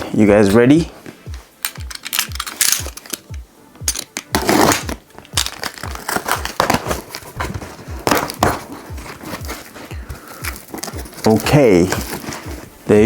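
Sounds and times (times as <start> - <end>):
music with thudding beat: 0.0 - 12.9
cardboard box being opened: 4.4 - 9.8.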